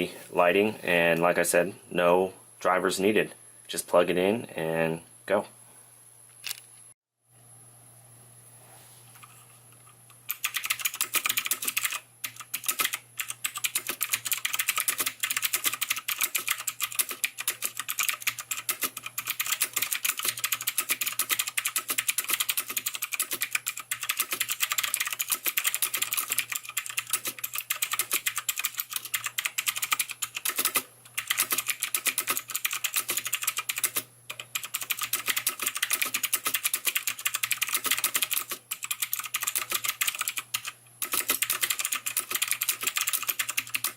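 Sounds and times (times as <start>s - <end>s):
fast mechanical keyboard typing: 10.3s - 43.9s.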